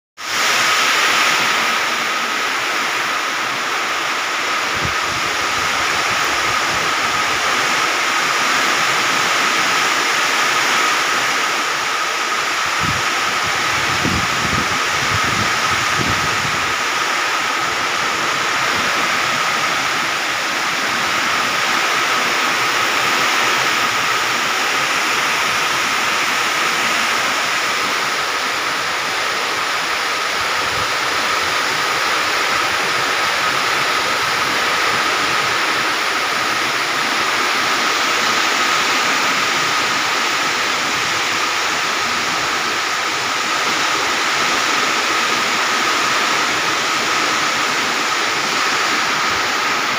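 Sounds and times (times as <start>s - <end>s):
heavy rain pouring: 0.2s - 49.9s
strong wind: 0.2s - 49.9s.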